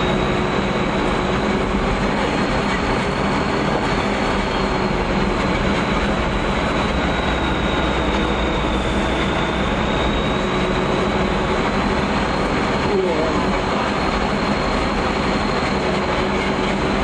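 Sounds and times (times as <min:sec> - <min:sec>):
army truck engine running: 0:00.0 - 0:17.0
high drivetrain whine: 0:00.0 - 0:17.0.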